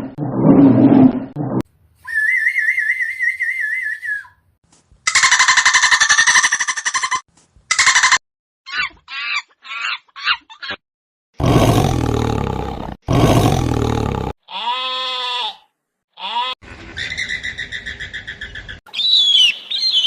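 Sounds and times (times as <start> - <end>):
long loud animal roars: 11.4 - 14.4.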